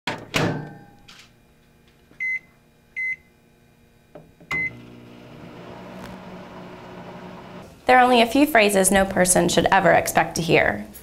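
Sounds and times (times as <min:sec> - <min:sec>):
microwave oven humming: 0:00.4 - 0:08.8
microwave keypad beeps: 0:02.2 - 0:03.2, 0:04.5 - 0:04.8.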